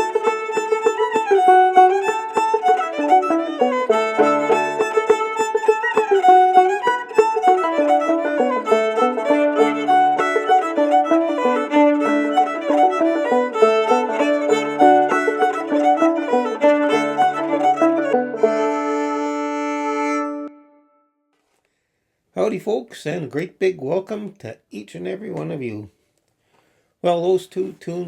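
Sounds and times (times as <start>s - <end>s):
banjo picking: 0.0s - 20.6s
fiddle playing: 0.0s - 21.0s.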